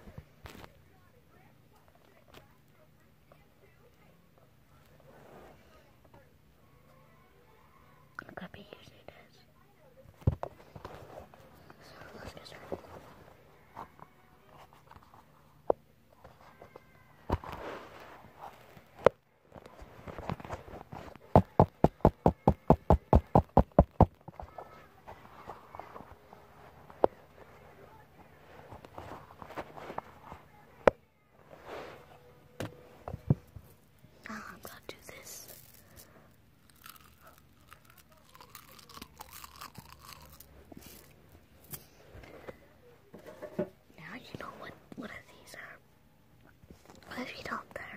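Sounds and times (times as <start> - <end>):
soft crunching and crackling: 0.0 - 0.9, 10.1 - 45.0, 46.4 - 47.9
knocking on hard surface: 21.4 - 24.2.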